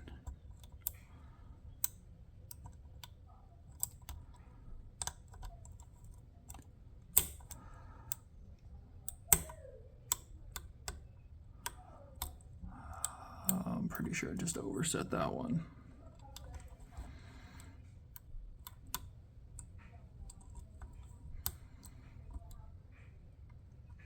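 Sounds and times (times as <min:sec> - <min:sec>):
lock pick clicking in a padlock: 0:05.0 - 0:08.2, 0:09.0 - 0:12.5.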